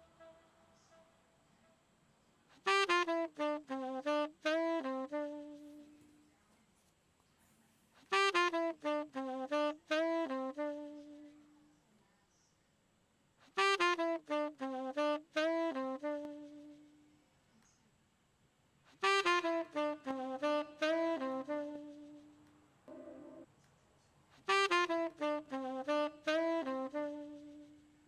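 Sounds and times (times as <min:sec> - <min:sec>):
saxophone melody: 0:02.6 - 0:06.1, 0:08.1 - 0:11.5, 0:13.6 - 0:17.0, 0:19.0 - 0:23.4, 0:24.5 - 0:28.0.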